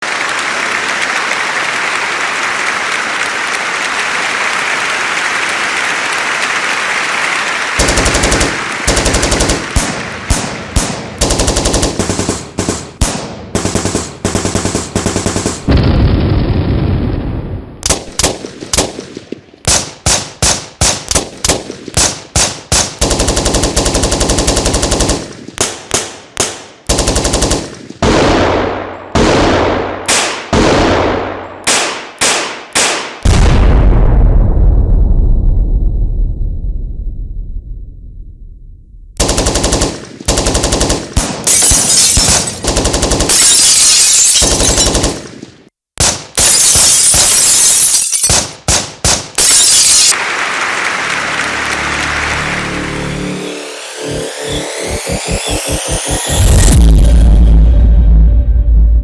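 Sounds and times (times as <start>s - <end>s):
machine-gun bursts: 7.8s - 12.9s, 13.6s - 15.7s, 19.7s - 27.8s, 39.2s - 45.4s
deep rumble: 33.8s - 39.2s, 54.1s - 59.0s.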